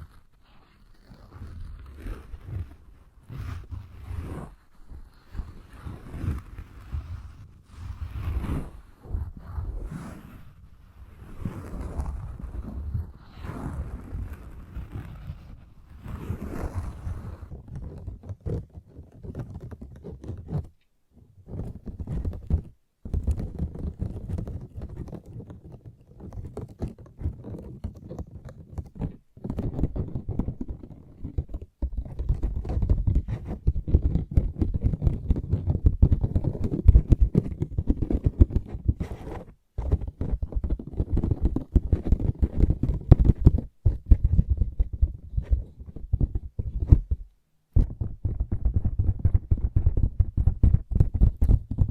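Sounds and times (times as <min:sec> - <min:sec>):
fingertips tapping and scratching: 0:11.2 - 0:51.9.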